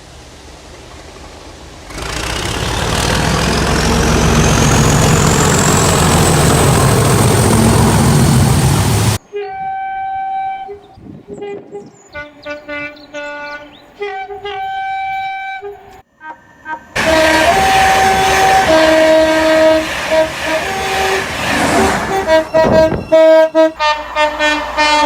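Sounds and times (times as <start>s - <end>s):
train passing with roar and whine: 0.0s - 11.2s, 12.6s - 25.0s
multi-note train horn: 9.2s - 25.0s.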